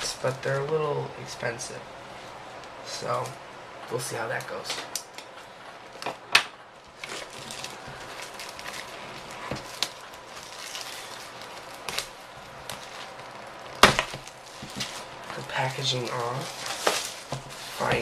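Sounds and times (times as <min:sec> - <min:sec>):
packaging rustling and crinkling: 0:06.8 - 0:18.0.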